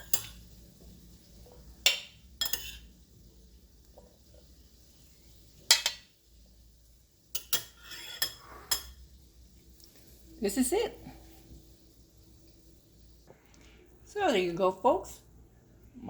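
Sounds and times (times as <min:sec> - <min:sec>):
utensil clinking against dishes: 0:00.0 - 0:00.4, 0:01.8 - 0:02.9, 0:05.7 - 0:06.1, 0:07.3 - 0:09.0.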